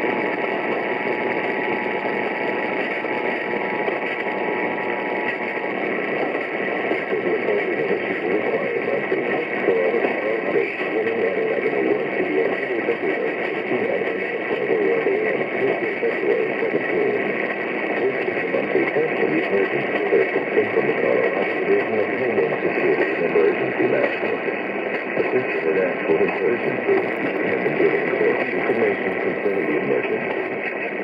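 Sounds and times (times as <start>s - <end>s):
radio static noise: 0.0s - 31.0s.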